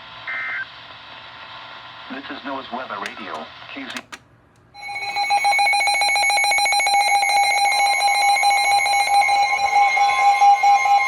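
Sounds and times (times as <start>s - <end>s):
pulsing electronic alarm tone: 4.8s - 11.0s
steady electronic tone: 4.8s - 11.0s.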